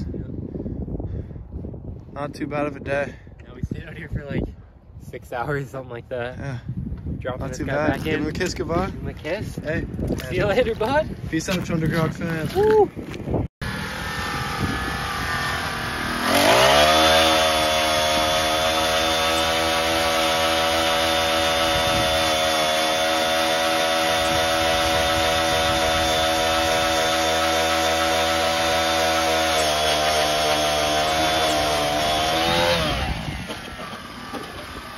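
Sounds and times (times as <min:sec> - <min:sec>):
small petrol engine revving: 0:13.6 - 0:34.9.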